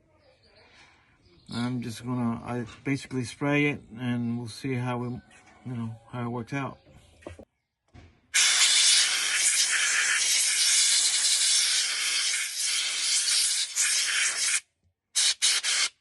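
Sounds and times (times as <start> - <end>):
aerosol can spraying hiss: 8.4 - 14.6, 15.2 - 16.0.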